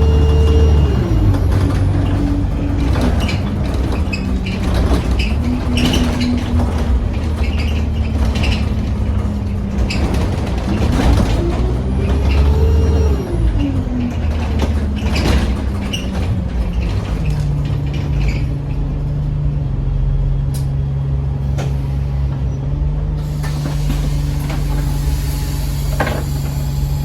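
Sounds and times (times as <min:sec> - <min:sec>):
engine clicks and rattles: 0:00.0 - 0:19.4
diesel bus engine: 0:00.0 - 0:27.0.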